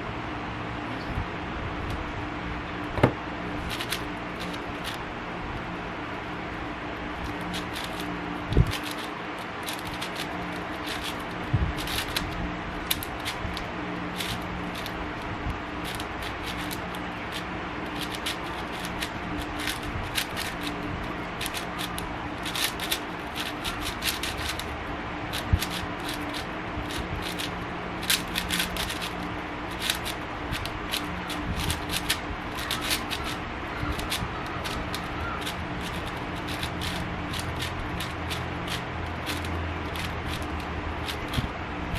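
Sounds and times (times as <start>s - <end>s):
steady low hum: 0.0s - 41.9s
louder knocks: 3.0s - 3.2s
plastic puzzle cube clicking: 3.7s - 5.0s, 7.3s - 8.0s, 8.6s - 13.6s, 14.2s - 15.0s, 15.8s - 20.8s, 21.4s - 24.7s, 25.3s - 41.4s.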